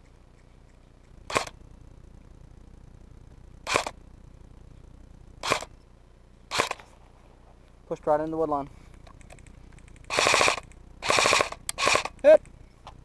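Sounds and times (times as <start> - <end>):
airsoft gun single shots: 1.3 - 1.6, 3.7 - 4.0, 5.4 - 5.7, 6.5 - 6.9, 10.1 - 12.4.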